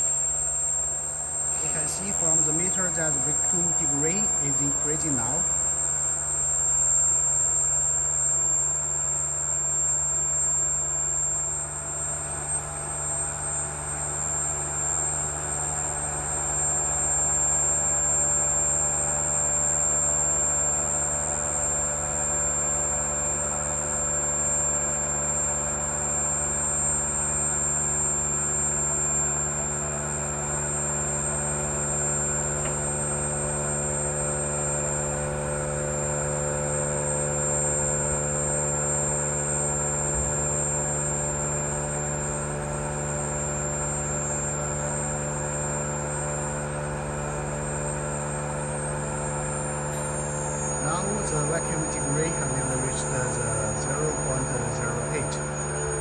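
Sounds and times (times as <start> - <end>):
high whine: 0.0 - 6.6, 49.9 - 56.0
vacuum pump running: 0.0 - 56.0.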